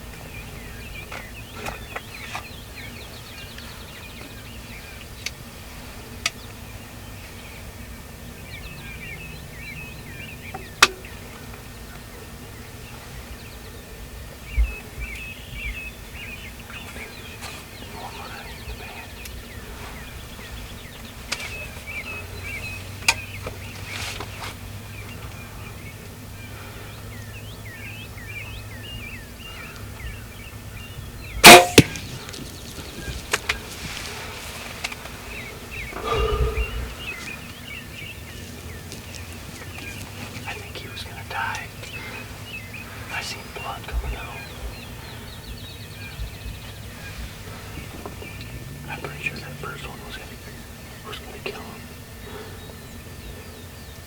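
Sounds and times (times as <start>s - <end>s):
songbirds chirping: 0.0s - 54.0s
bow shot and arrow striking: 31.4s - 32.2s.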